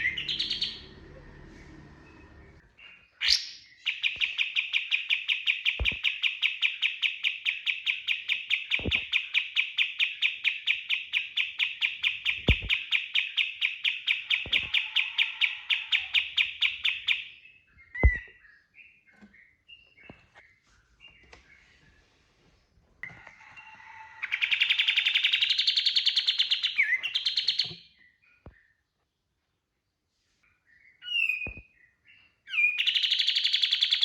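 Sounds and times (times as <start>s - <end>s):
bird chirps: 0.0s - 22.1s, 24.2s - 29.2s, 30.4s - 34.0s
dull thumps: 5.8s - 6.0s, 12.4s - 12.8s.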